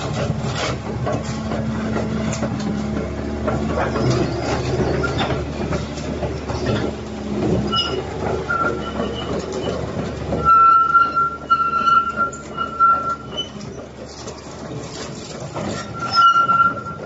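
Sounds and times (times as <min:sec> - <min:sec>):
excavator clattering rumble: 0:00.0 - 0:17.0
high metallic squeal: 0:03.8 - 0:05.4, 0:07.7 - 0:13.8, 0:15.6 - 0:17.0.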